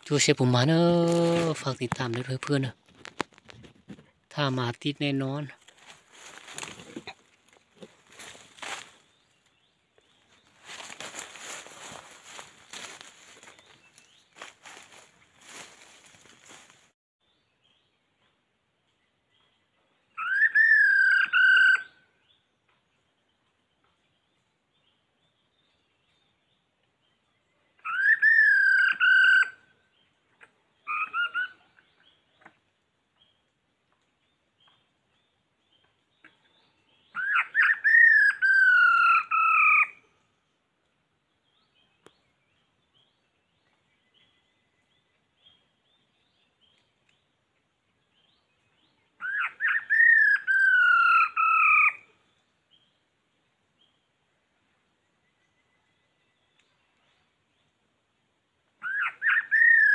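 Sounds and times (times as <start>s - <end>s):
bird calling: 30.4s - 32.6s, 36.2s - 40.0s, 49.2s - 52.2s, 58.8s - 59.9s.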